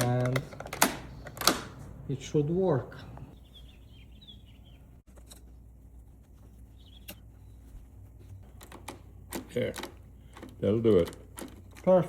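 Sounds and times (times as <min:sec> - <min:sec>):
key turning in lock: 0:00.0 - 0:01.7, 0:08.6 - 0:12.0.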